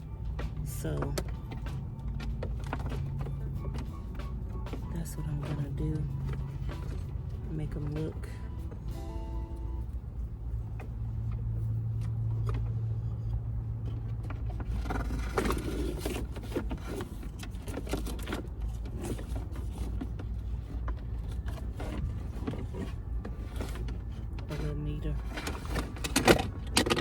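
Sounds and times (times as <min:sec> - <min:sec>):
low vehicle hum: 0:00.0 - 0:27.0
electrical wires clicking and rustling: 0:10.6 - 0:27.0.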